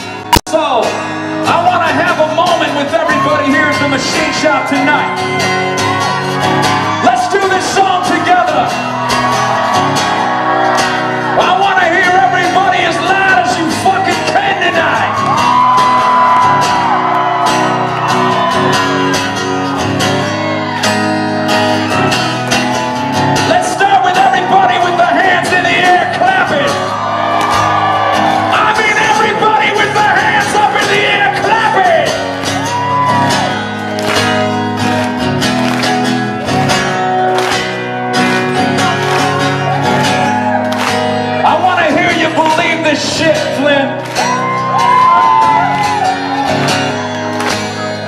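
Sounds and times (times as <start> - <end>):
live rock band with guitar: 0.0 - 48.0
people shouting: 2.9 - 13.3, 21.7 - 34.1, 44.1 - 48.0.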